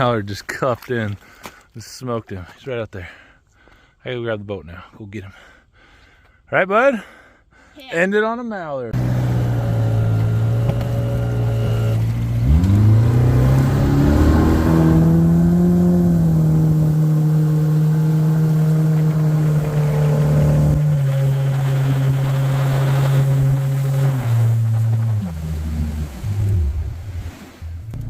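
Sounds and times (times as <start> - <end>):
boat engine idling and revving: 9.0 - 28.0.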